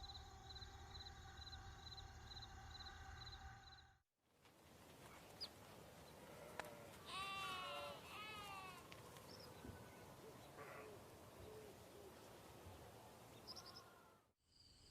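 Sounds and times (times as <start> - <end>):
animal bleating: 6.2 - 8.9.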